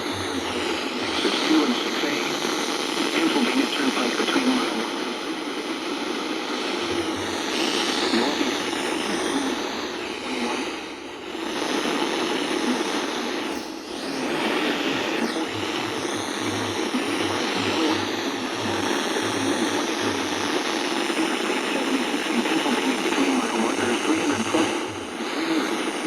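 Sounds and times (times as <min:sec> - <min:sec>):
low pulsing buzz: 0:00.0 - 0:02.6, 0:06.5 - 0:21.5, 0:23.6 - 0:26.0
radio static hiss: 0:00.0 - 0:26.0.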